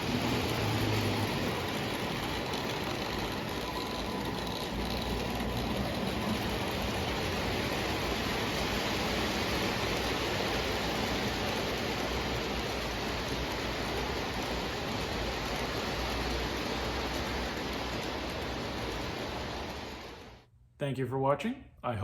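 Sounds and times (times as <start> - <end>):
model train wheels rumbling on track: 0.0 - 20.5.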